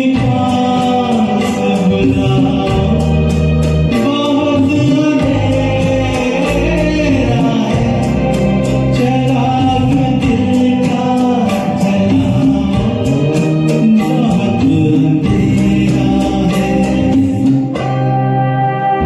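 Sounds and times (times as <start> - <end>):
karaoke backing track: 0.0 - 19.0
man singing: 0.0 - 19.0.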